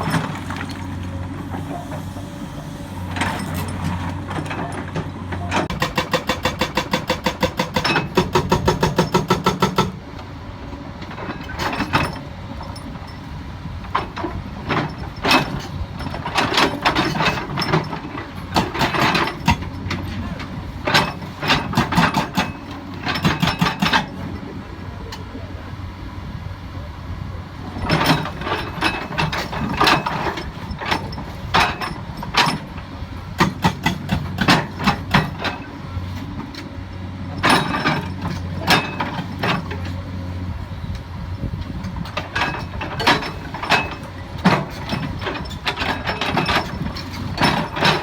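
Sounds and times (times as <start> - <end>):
diesel engine droning: 0.0 - 5.8
hydraulic breaker hammer pounding rock: 3.0 - 10.0, 13.9 - 24.5, 27.7 - 40.1, 41.5 - 48.0.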